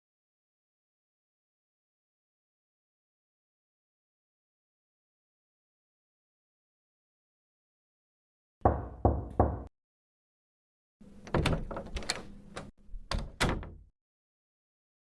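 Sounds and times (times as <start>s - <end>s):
knocking on wooden door: 8.6s - 9.7s.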